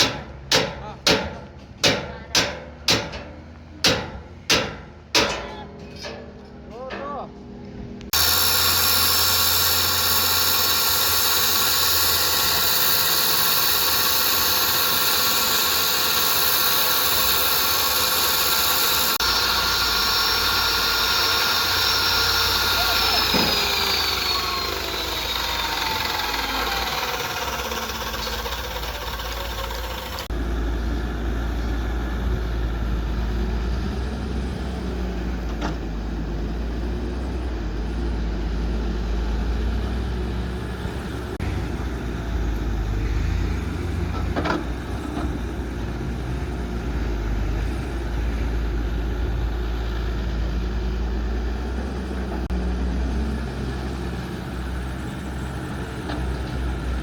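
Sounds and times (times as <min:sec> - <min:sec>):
heavy diesel engine drone: 0:02.8 - 0:57.0
downward gliding whine: 0:19.2 - 0:30.8.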